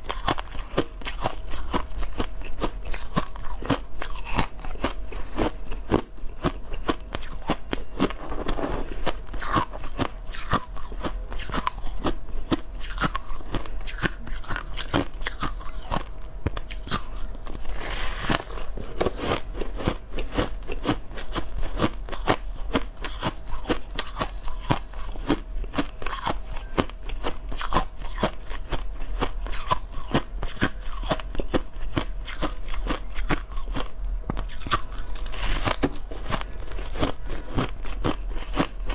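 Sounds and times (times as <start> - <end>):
crushed ice crunching: 8.0 - 9.2, 34.9 - 36.3.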